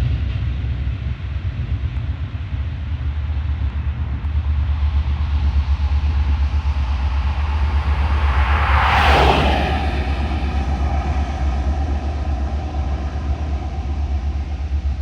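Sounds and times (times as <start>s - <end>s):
diesel locomotive rumble: 0.0s - 15.0s.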